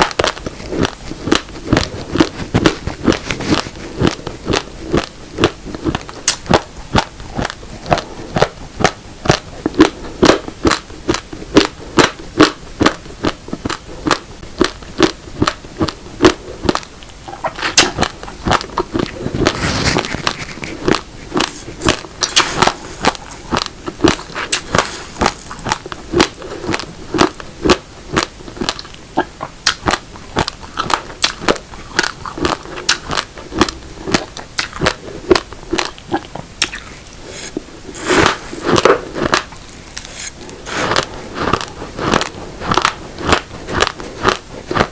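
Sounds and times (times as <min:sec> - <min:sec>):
rustling crackle: 0:00.0 - 0:04.6, 0:17.6 - 0:26.9
crunching raw rice grains: 0:00.0 - 0:44.9.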